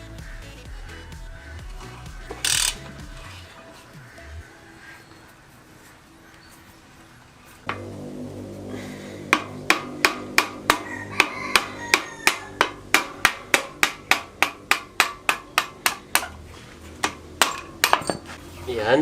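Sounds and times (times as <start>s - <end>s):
rhythmic hammer blows: 7.7s - 18.4s.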